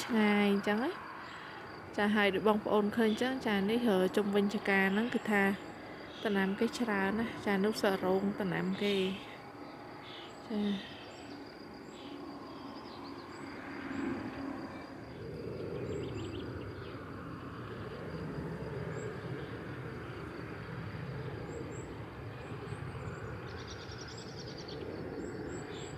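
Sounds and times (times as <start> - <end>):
high insect trill: 0.0 - 25.9
faint bird chirps: 4.6 - 17.0.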